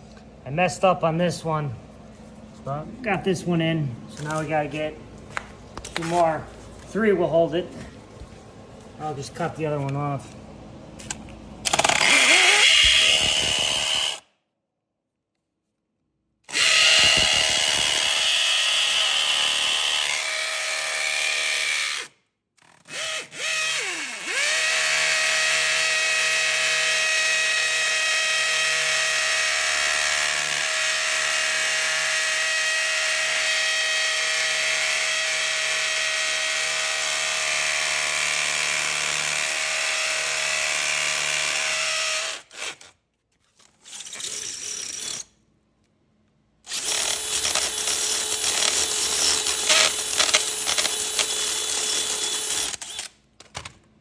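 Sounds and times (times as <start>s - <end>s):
electric drill boring concrete: 11.6s - 14.2s, 16.5s - 42.9s, 46.7s - 53.1s.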